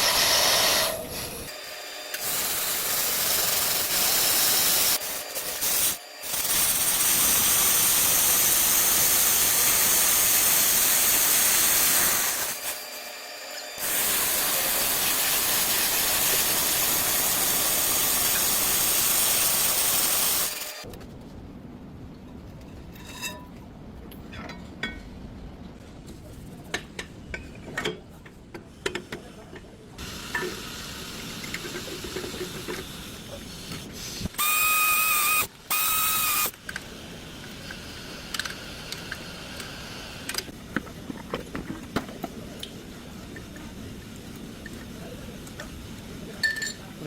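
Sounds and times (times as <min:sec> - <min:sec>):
loud hissing blasts with whistle: 0:00.0 - 0:01.5, 0:33.0 - 0:40.2.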